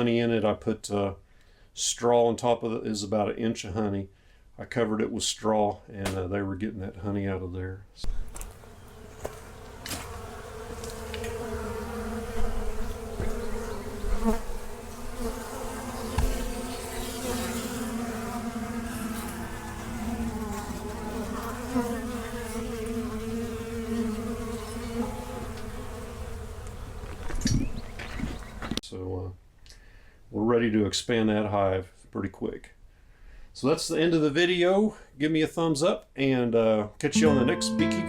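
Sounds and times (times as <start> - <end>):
honey bees buzzing: 8.4 - 27.2.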